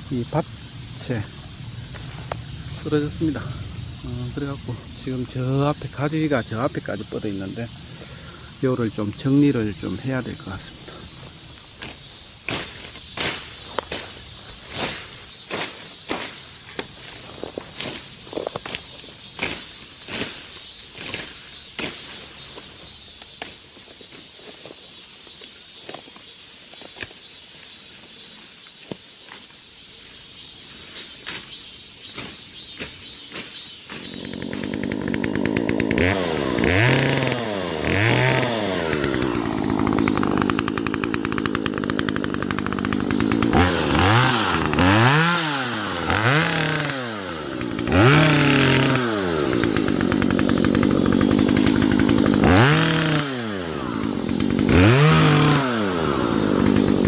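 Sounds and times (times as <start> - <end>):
chainsaw revving and cutting: 11.8 - 23.6, 32.1 - 57.0.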